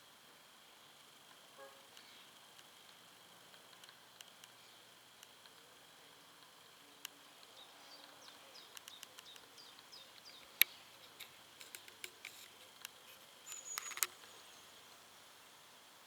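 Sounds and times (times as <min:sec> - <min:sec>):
sharp clicks: 0:08.3 - 0:14.3.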